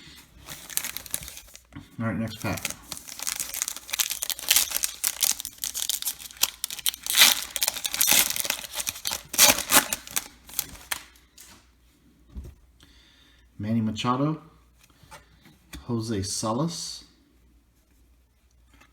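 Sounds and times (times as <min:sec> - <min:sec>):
wrapper tearing and crinkling: 0:00.0 - 0:01.6, 0:02.3 - 0:11.2.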